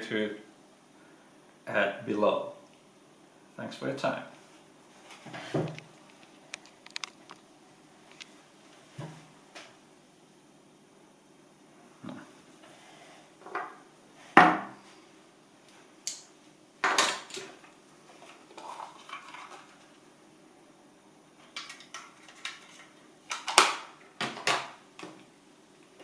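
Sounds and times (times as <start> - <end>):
hard objects knocking and clattering: 16.8 - 17.5.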